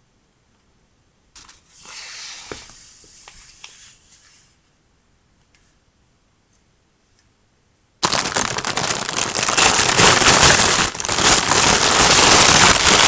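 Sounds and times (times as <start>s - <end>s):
packaging rustling: 8.0s - 13.0s.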